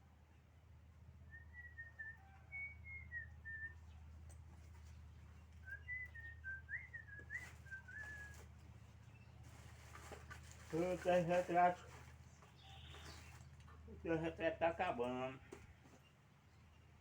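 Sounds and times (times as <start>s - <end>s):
person whistling a tune: 1.4s - 3.8s, 5.7s - 8.4s.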